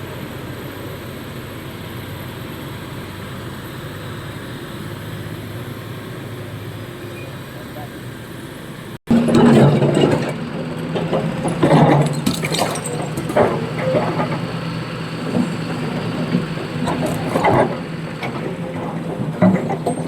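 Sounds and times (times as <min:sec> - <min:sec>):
excavator engine running: 0:00.0 - 0:20.0
stone and steel clanking: 0:09.1 - 0:20.0.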